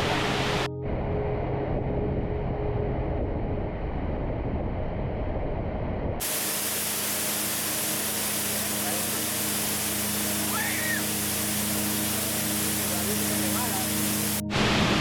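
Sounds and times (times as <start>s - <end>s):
waterfall rushing: 0.0s - 0.7s, 6.2s - 15.0s.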